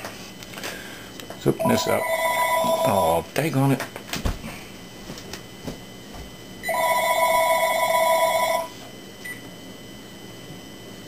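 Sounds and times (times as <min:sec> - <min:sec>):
electronic telephone ringing: 0:01.6 - 0:03.0, 0:06.6 - 0:08.7.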